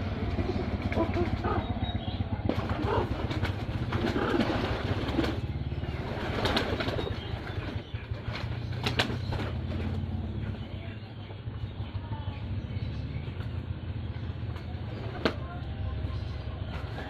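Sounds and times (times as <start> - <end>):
pigeons cooing: 0.0 - 10.9.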